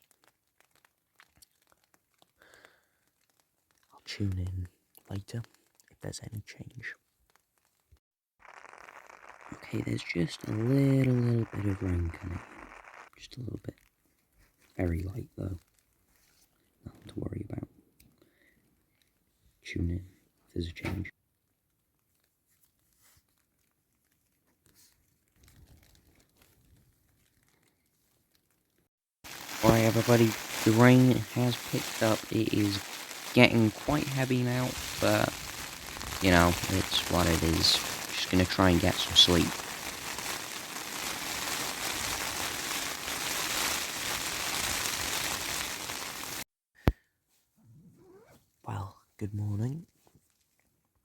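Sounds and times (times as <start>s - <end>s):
heavy rain on a tent: 0.0s - 5.5s, 8.4s - 13.0s, 29.2s - 46.4s.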